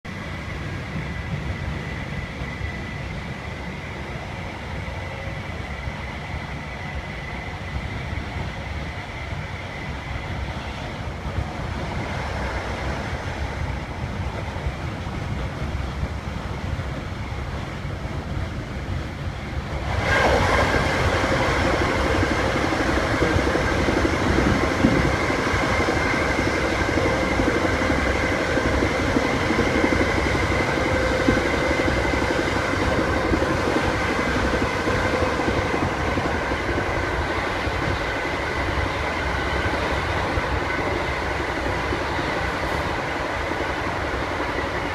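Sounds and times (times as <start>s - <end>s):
train rumble and rail noise: 0.0s - 44.9s
steady whining tones: 16.9s - 44.9s.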